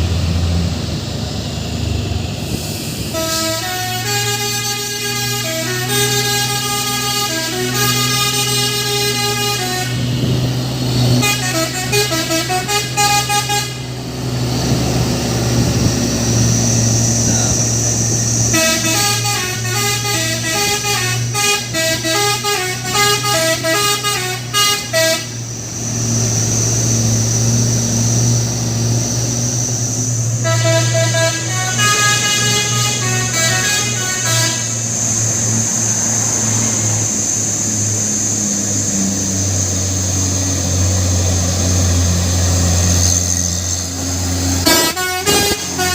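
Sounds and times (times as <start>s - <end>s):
truck engine humming: 0.0s - 45.9s
multi-tone air horn melody: 3.1s - 10.3s, 11.1s - 14.0s, 18.4s - 25.4s, 30.4s - 35.0s, 44.4s - 45.9s.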